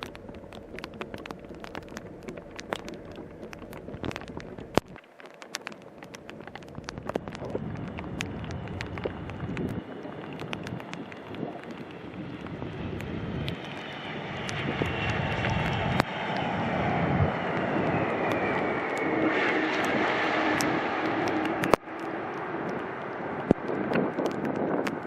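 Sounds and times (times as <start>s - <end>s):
sharp clicks: 0.0s - 16.5s, 18.1s - 25.0s
rain and wind on microphone: 0.0s - 25.0s
jet airliner passing: 5.7s - 25.0s
turbofan whine: 6.9s - 25.0s.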